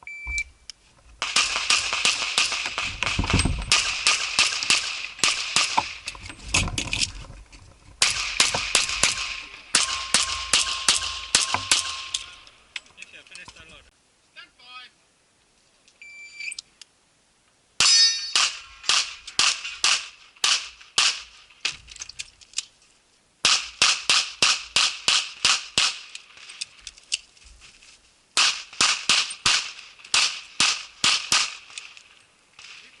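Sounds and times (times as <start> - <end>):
shot timer beep: 0.0 - 0.5
pistol fired rapidly: 1.2 - 5.8.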